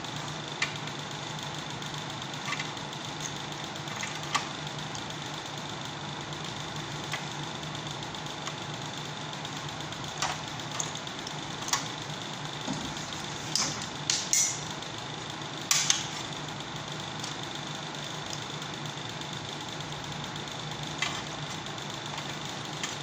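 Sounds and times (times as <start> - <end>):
steady low hum: 0.0 - 23.0
clicks and knocks of tools: 2.4 - 4.5, 10.2 - 11.9, 12.6 - 14.7, 15.7 - 16.1, 21.0 - 21.3.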